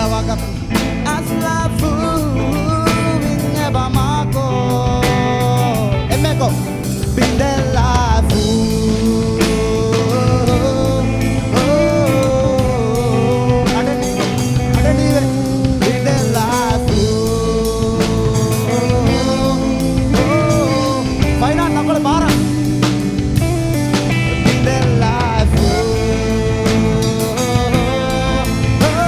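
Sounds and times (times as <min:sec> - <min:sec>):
live band with guitar and drums: 0:00.0 - 0:29.0
sustained bending lead melody: 0:08.3 - 0:29.0.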